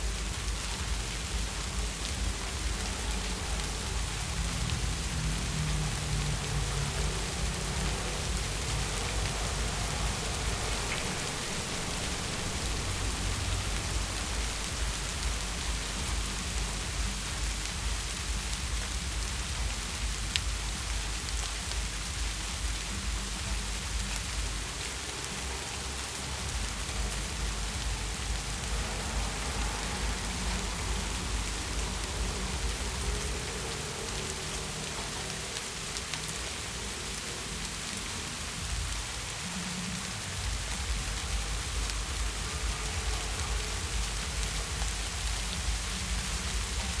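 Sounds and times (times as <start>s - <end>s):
low rumble: 0.0s - 35.2s
heavy rain on hard surfaces: 0.0s - 47.0s.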